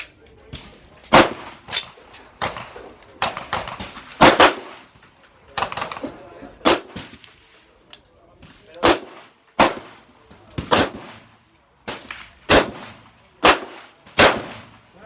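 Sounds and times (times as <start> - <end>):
gunshots: 1.1 - 1.8, 2.4 - 4.8, 5.6 - 7.2, 8.8 - 10.0, 10.6 - 11.3, 11.9 - 14.7.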